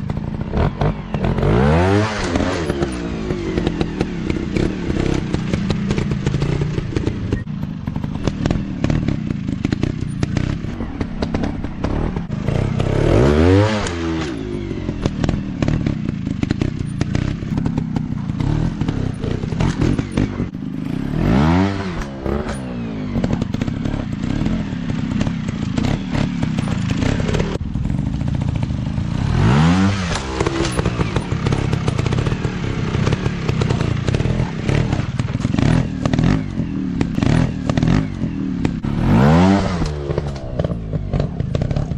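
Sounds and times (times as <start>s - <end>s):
dirt bike engine revving: 0.0s - 41.9s
dirt bike engines running: 0.0s - 41.9s.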